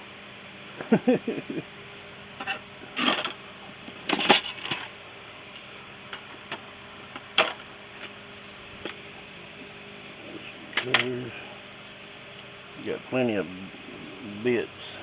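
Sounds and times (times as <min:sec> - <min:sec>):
tools clinking in a toolbox: 0:04.1 - 0:04.9.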